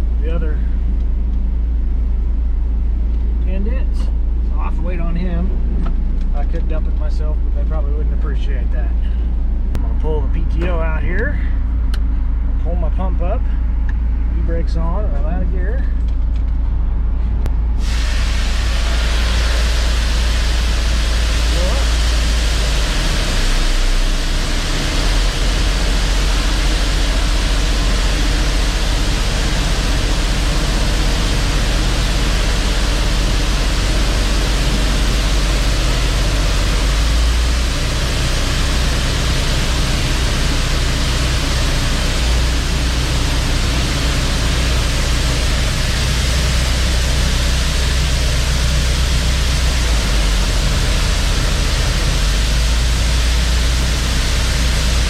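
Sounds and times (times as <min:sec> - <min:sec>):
truck engine idling: 0:00.0 - 0:55.0
rushing hiss: 0:17.8 - 0:55.0.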